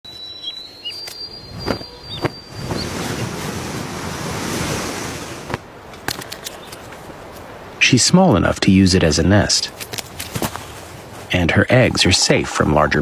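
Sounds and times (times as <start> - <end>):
high falling chirps: 0.1 - 4.2
rushing wind-like noise: 1.3 - 13.0.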